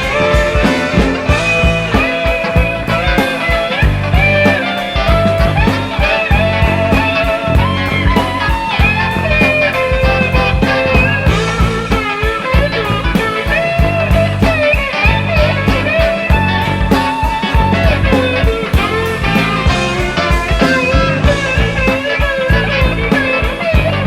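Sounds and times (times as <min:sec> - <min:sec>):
bass guitar: 0:00.0 - 0:24.0
electric guitar lead: 0:00.0 - 0:24.0
steady drum beat: 0:00.0 - 0:24.0.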